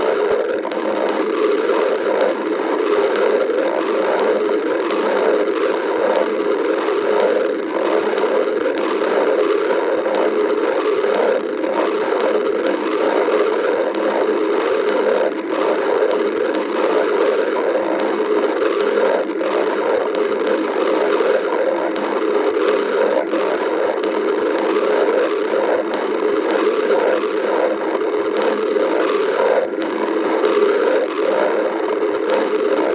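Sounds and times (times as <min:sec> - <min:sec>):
stomach growling: 0:00.0 - 0:32.9.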